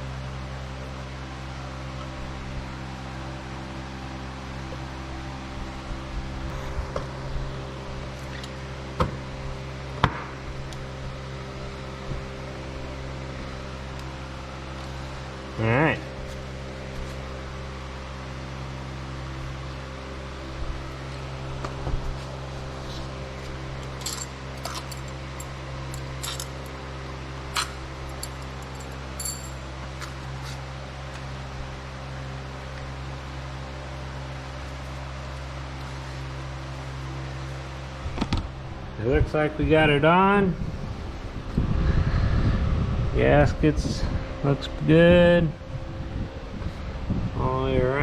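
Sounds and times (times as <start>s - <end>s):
steady mechanical hum: 0.0s - 48.0s
light metallic clinks and taps: 24.0s - 26.6s, 28.1s - 29.6s.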